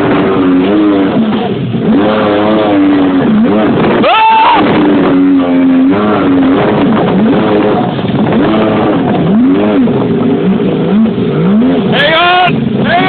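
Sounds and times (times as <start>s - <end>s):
jet ski engine revving: 0.0s - 13.0s.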